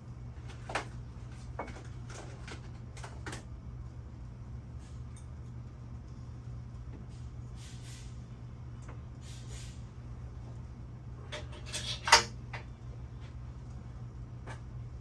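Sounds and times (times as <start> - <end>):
steady low hum: 0.0 - 15.0
tools clicking and clacking: 11.3 - 12.4.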